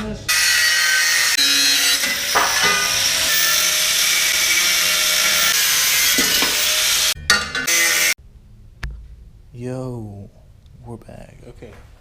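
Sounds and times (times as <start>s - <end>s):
power tool running: 0.3s - 8.2s.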